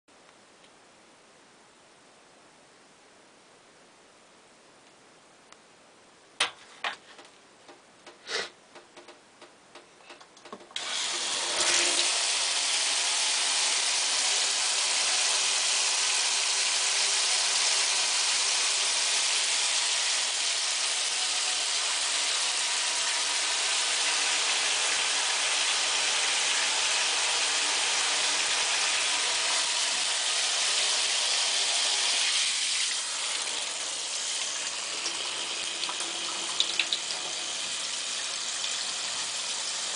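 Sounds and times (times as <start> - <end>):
light clicks and knocks: 6.4 - 10.8
shower head spraying water: 10.8 - 39.9.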